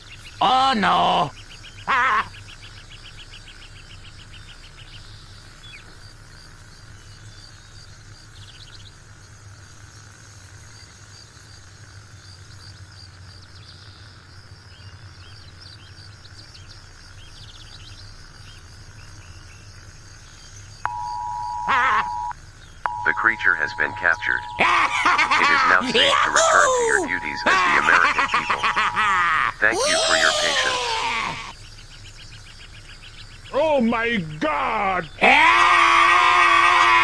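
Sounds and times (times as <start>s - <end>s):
insects chirping: 0.0s - 37.0s
bird calls: 20.9s - 22.3s, 22.9s - 35.2s
low hum: 20.9s - 22.3s, 22.9s - 29.6s
two-tone alert signal: 20.9s - 22.3s, 22.9s - 29.3s.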